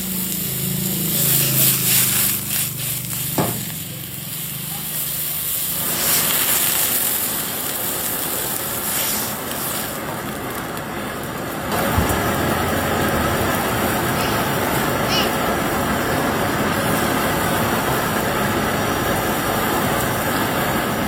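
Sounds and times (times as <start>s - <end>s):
food sizzling in oil: 0.0s - 21.0s.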